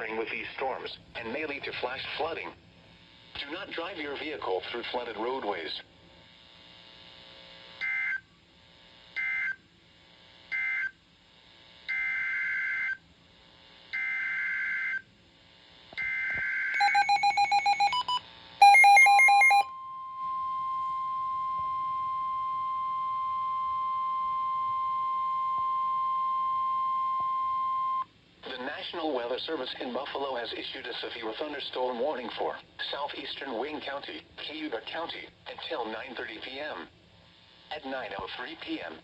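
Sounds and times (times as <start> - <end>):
radio receivers beeping rapidly: 16.8 - 19.6
screeching digital data tones: 16.8 - 19.6
steady warning alarm tone: 16.8 - 19.6.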